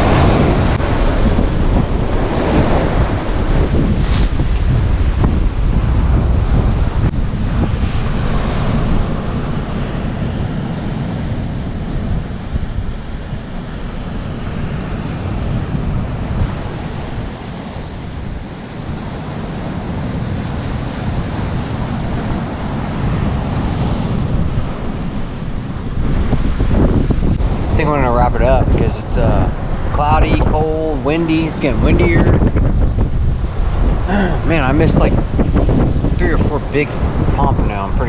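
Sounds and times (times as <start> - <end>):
surf breaking on beach: 0.0 - 38.0
wind buffeting microphone: 0.0 - 38.0.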